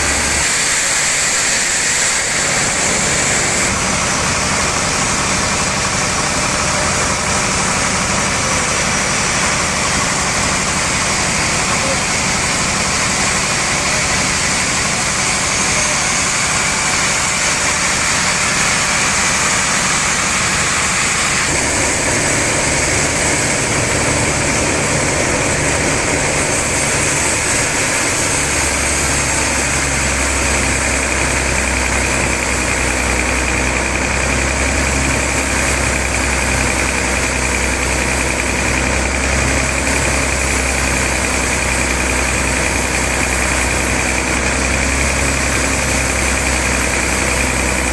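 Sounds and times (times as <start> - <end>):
sawmill saw running: 0.0 - 47.9
deep hum: 21.2 - 31.9.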